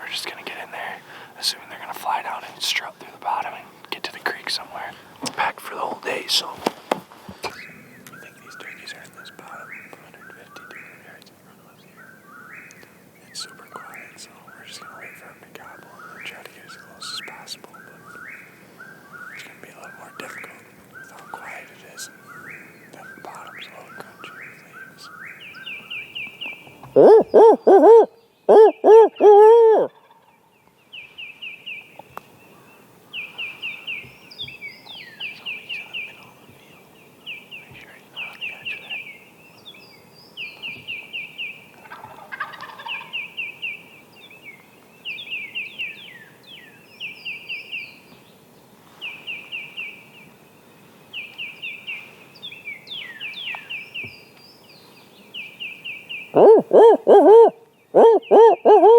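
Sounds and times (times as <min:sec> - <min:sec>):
turkey gobbling: 0:41.8 - 0:43.2.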